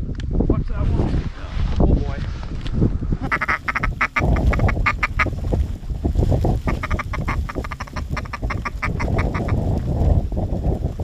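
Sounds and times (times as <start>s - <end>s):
duck quacking rapidly: 3.3s - 5.3s, 6.7s - 9.6s.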